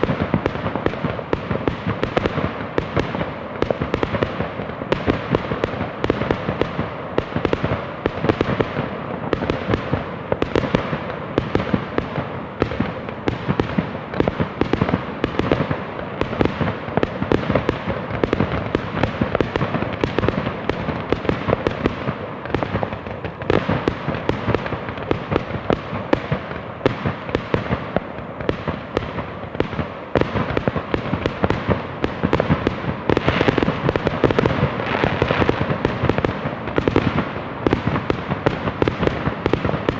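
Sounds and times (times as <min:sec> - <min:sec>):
fireworks bangs and crackles: 0:00.0 - 0:39.9.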